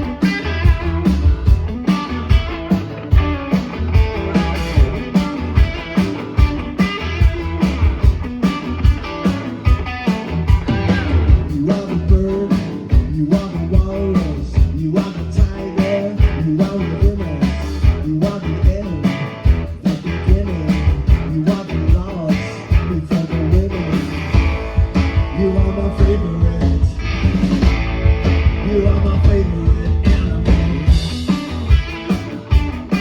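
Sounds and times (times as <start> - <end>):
live rock band playing: 0.0 - 33.0.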